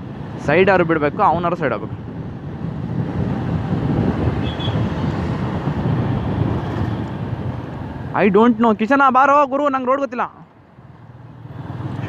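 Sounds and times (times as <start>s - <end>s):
road and wind noise: 0.0s - 12.0s.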